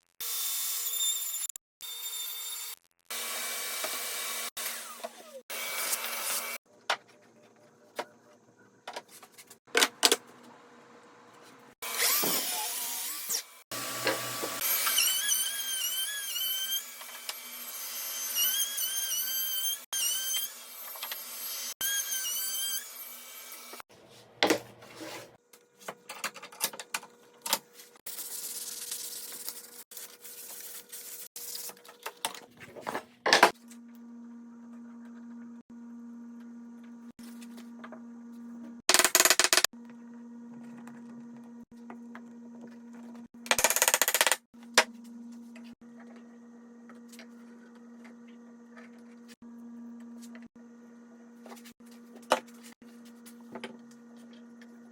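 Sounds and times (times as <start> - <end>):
power tool running: 11.8 - 17.8.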